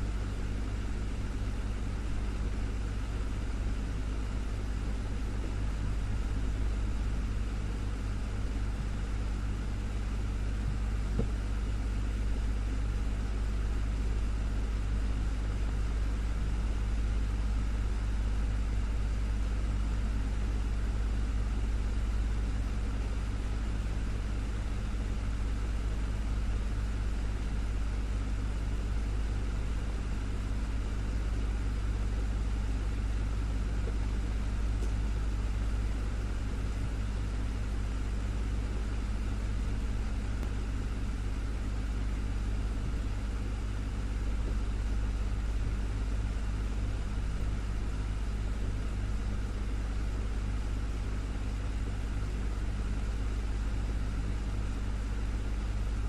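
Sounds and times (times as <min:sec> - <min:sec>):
desktop fan running: 0:00.0 - 0:56.0.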